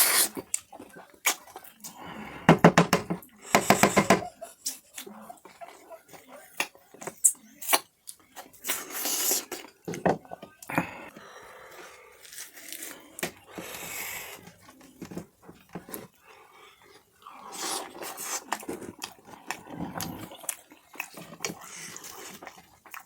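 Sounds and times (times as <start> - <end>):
wet chewing and lip smacking: 16.6 - 23.0.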